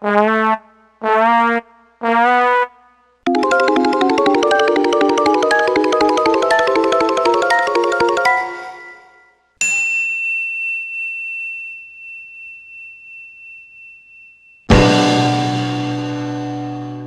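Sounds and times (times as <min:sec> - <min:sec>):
bright mallet percussion notes: 0:03.3 - 0:10.5
bell-like ding: 0:08.5 - 0:14.6.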